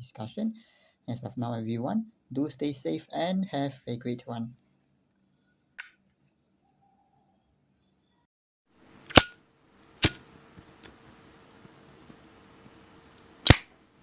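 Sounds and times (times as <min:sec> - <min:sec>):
lighter lid clinking: 0:09.1 - 0:09.4, 0:10.0 - 0:11.0, 0:13.4 - 0:13.7.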